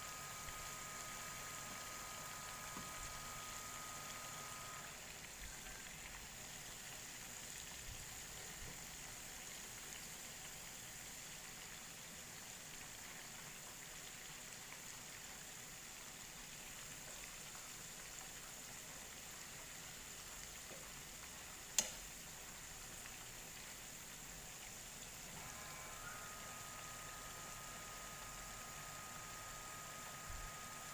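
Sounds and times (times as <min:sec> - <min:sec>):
chicken sizzling in oil: 0:00.0 - 0:30.9
oil pop: 0:21.8 - 0:22.1.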